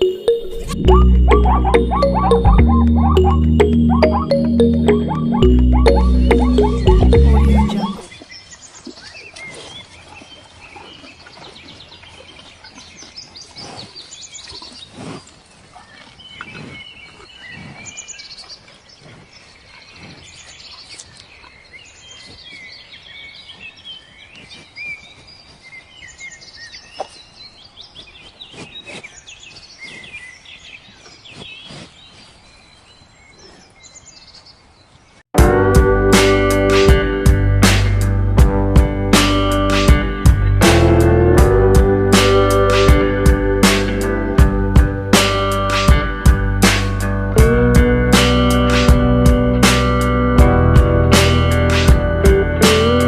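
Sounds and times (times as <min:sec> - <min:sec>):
small birds chirping: 0:00.9 - 0:35.3.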